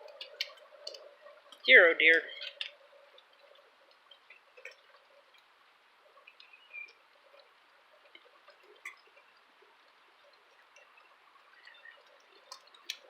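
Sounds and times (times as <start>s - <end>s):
faint bird chirps: 6.2s - 7.4s, 10.4s - 12.6s.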